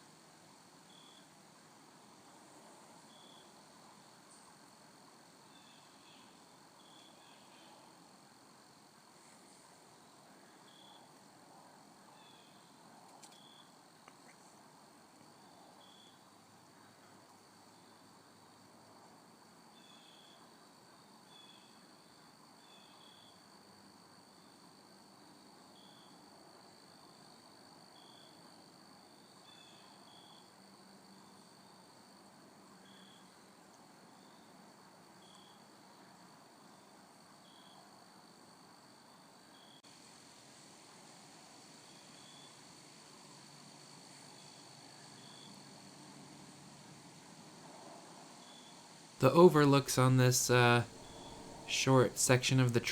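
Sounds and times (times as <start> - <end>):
insects droning: 0.9 - 1.3, 2.2 - 14.4, 15.1 - 52.9
short insect chirps: 13.2 - 13.8, 41.8 - 42.6, 44.4 - 45.6.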